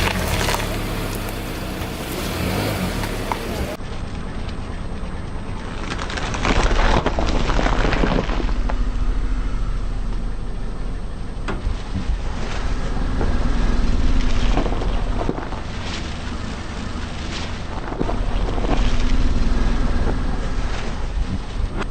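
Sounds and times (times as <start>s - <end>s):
tyre crushing objects: 0.0s - 3.6s, 5.8s - 8.9s
car engine rumbling: 0.0s - 21.9s.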